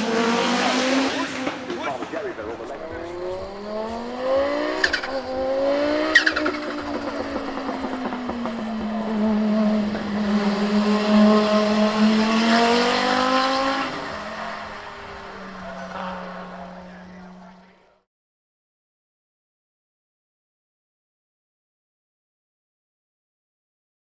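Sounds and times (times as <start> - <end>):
race car engine accelerating: 0.0 - 18.0.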